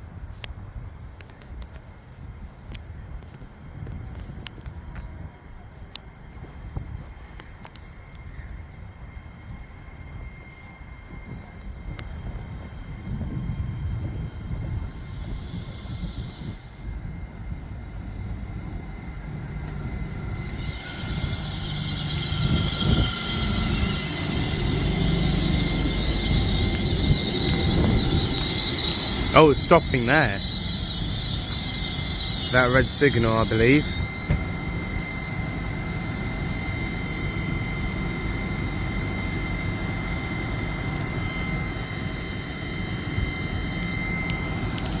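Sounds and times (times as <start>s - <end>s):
train rumble: 0.0s - 45.0s
train brakes hissing: 14.8s - 18.0s, 18.9s - 36.8s.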